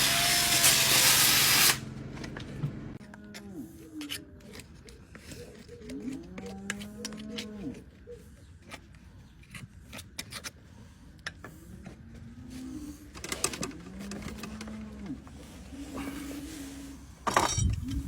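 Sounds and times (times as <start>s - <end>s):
clicks and scrapes: 4.0s - 12.0s
cow lowing: 11.6s - 17.1s.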